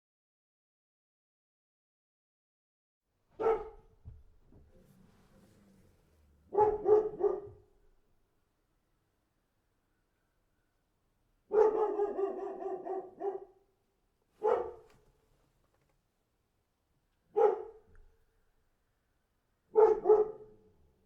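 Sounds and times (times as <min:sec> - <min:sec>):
large dog barking: 0:03.4 - 0:04.0, 0:06.5 - 0:07.7, 0:11.5 - 0:13.6, 0:14.4 - 0:14.9, 0:17.3 - 0:17.9, 0:19.7 - 0:20.7.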